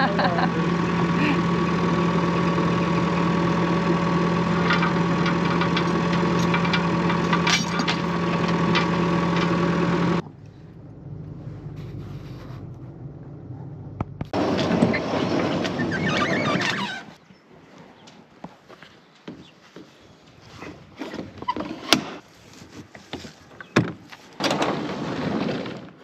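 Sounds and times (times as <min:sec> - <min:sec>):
tractor engine running: 0:00.0 - 0:17.2.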